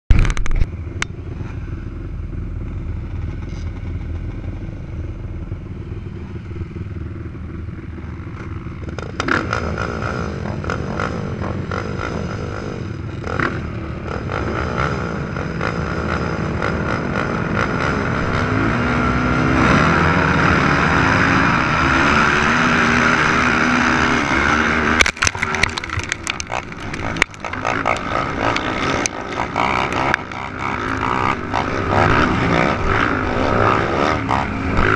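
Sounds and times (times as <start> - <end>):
quad engines revving: 8.3 - 34.9.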